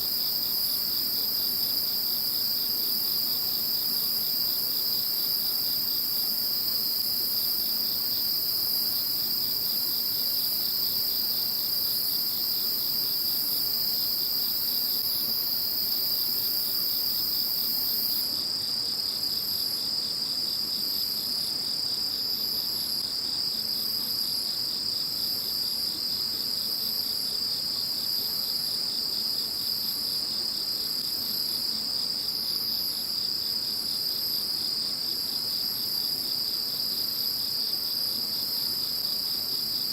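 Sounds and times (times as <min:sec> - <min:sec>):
insects trilling: 0:00.0 - 0:18.4
insect chirping: 0:00.0 - 0:39.9.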